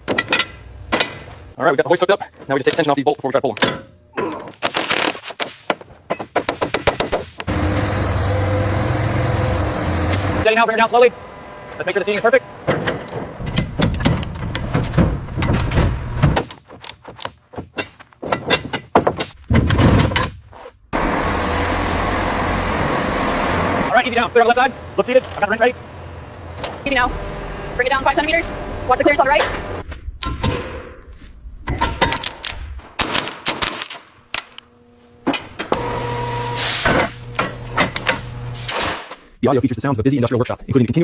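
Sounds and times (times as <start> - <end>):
metal clanks and knocks: 0.0 - 1.5, 2.4 - 4.6, 5.2 - 7.6, 12.2 - 20.5, 29.3 - 31.0, 31.6 - 34.6, 35.2 - 35.8
steady machine hum: 7.5 - 16.2, 21.0 - 29.9, 34.0 - 38.8.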